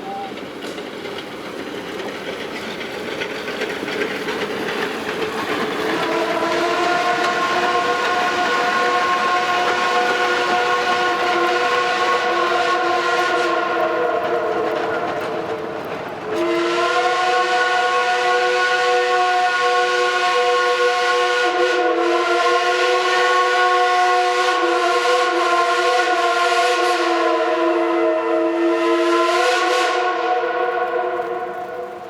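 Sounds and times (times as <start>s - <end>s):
steam hissing: 0.0s - 21.8s
steam locomotive chime whistle: 5.9s - 15.4s, 16.3s - 31.8s.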